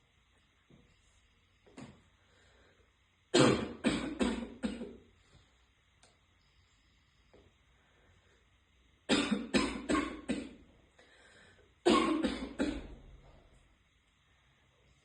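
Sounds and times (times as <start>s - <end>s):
woman coughing harshly: 3.3s - 5.0s, 9.1s - 10.6s, 11.8s - 13.0s.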